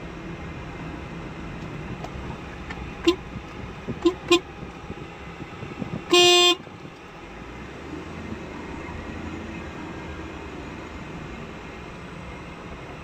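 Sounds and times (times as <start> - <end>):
road noise: 0.0 - 13.0
vehicle horns honking: 3.0 - 4.6, 6.0 - 6.7.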